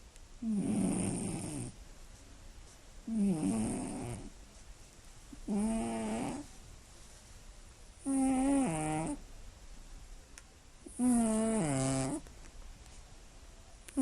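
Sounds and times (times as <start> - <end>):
cat snoring: 0.4 - 1.8, 3.1 - 4.3, 5.4 - 6.5, 8.0 - 9.2, 10.9 - 12.2.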